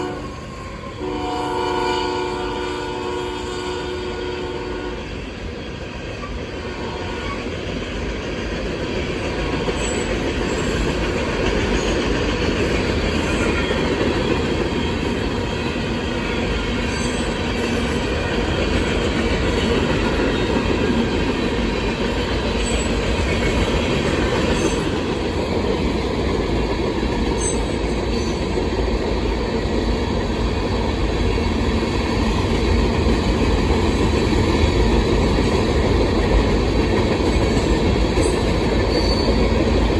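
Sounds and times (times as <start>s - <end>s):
locomotive horn: 0.0s - 5.1s, 6.6s - 7.5s
steel wheels rumbling on rail: 0.0s - 39.9s
high-pitched wheel squeals: 38.9s - 39.4s.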